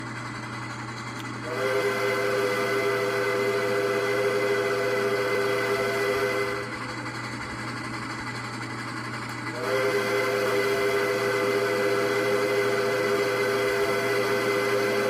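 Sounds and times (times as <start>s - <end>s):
steam locomotive whistle: 1.4s - 6.9s, 9.5s - 15.0s.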